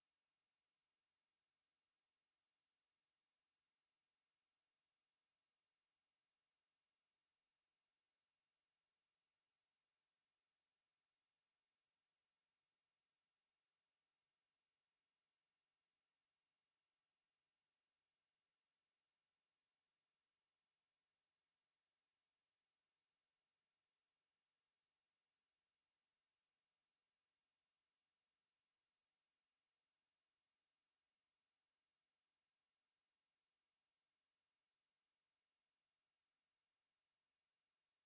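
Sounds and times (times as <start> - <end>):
high-pitched sine test tone: 0.0 - 2.9, 11.9 - 38.0.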